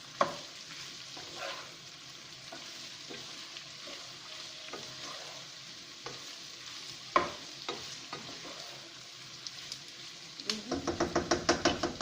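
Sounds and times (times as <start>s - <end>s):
food sizzling in a frying pan: 0.0s - 12.0s
utensil knocking against pan: 10.7s - 12.0s.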